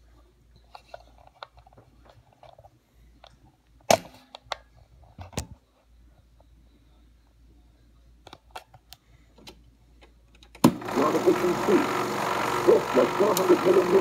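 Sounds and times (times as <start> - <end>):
projector control clicks: 12.8 - 14.0.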